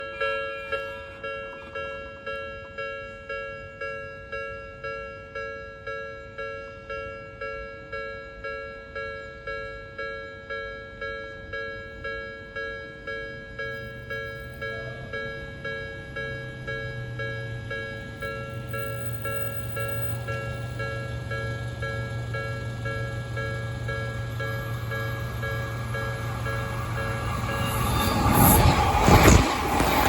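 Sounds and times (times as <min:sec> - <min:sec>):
level crossing warning bell: 0:00.0 - 0:30.0
low rumble: 0:17.3 - 0:30.0.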